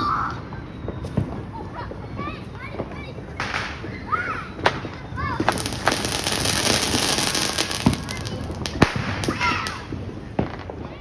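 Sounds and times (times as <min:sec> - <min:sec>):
firework bangs: 0:02.7 - 0:11.0
fireworks crackling hiss: 0:04.5 - 0:10.8.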